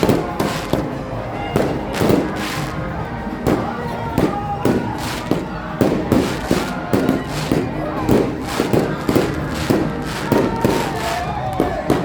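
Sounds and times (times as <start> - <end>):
fireworks bangs: 0.0 - 12.0
music: 0.0 - 12.0.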